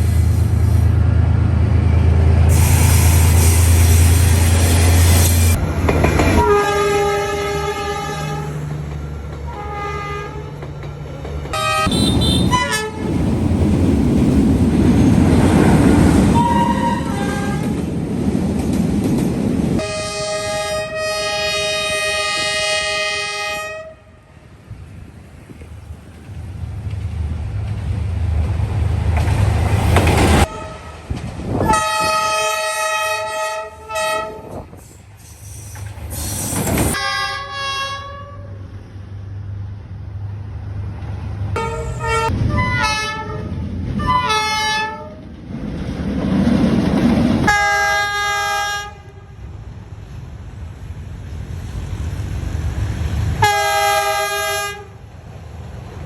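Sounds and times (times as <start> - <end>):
train rumbling: 0.0 - 56.0
locomotive air horn blasts: 6.3 - 8.6, 9.5 - 10.6, 11.5 - 13.1, 16.3 - 17.8, 19.8 - 24.2, 30.4 - 31.0, 31.6 - 34.6, 36.9 - 38.6, 41.6 - 45.2, 47.5 - 49.4, 53.4 - 55.0.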